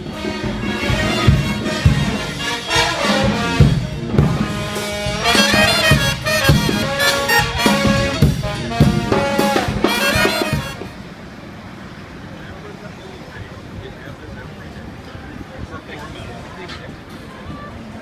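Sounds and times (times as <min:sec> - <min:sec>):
brass horns playing: 0:00.0 - 0:11.1
drum beat: 0:00.4 - 0:02.3, 0:03.0 - 0:10.9.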